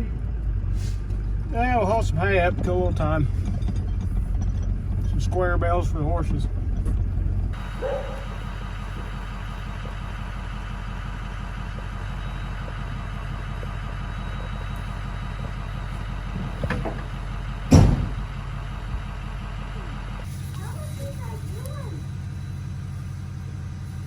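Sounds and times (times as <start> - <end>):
vehicle engine running at low revs: 0.0 - 24.0
knocks and thump: 16.2 - 18.3.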